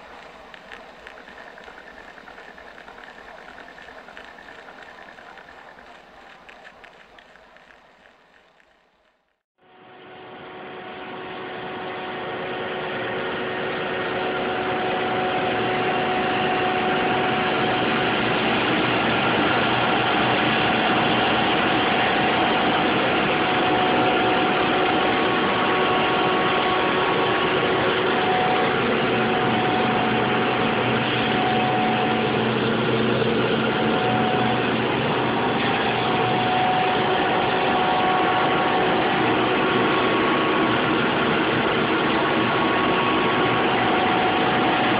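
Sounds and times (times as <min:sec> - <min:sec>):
faint whining tones: 0:00.0 - 0:09.4.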